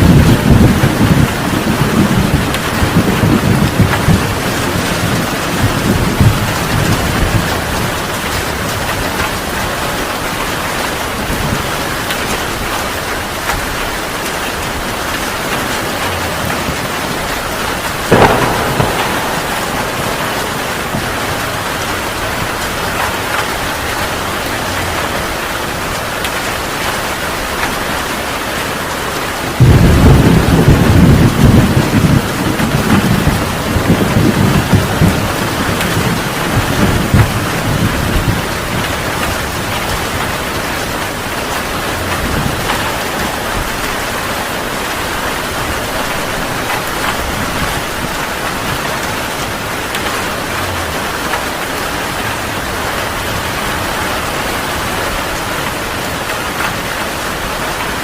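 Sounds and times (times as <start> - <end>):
thunder rumble: 0.0 - 28.3, 29.3 - 58.0
heavy rain pouring: 0.0 - 58.0
sharp thunder crack: 17.9 - 24.1, 29.6 - 41.1.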